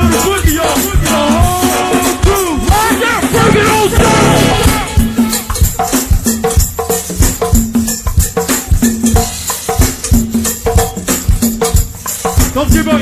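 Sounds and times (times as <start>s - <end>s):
drum beat: 0.0s - 13.0s
hand percussion: 0.0s - 13.0s
live band playing groove: 0.0s - 13.0s
short repeated pitched notes: 3.2s - 5.6s.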